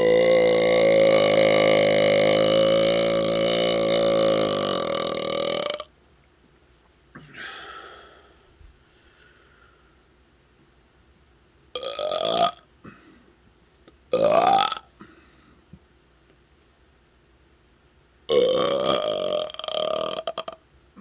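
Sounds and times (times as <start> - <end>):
man burping: 0.0 - 5.9, 11.8 - 13.1, 14.1 - 15.2, 18.3 - 20.6.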